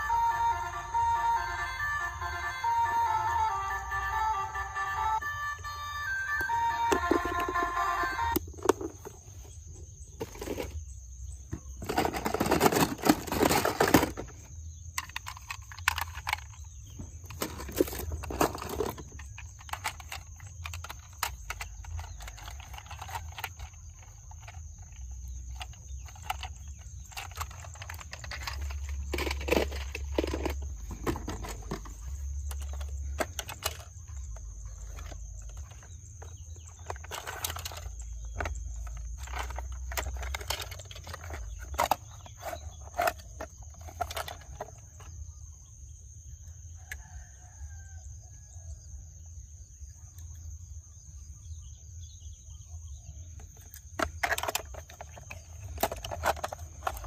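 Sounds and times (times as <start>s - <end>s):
plastic toy cars clicking and rattling: 6.4s - 9.4s, 10.2s - 10.9s, 11.5s - 45.2s, 53.3s - 57.0s.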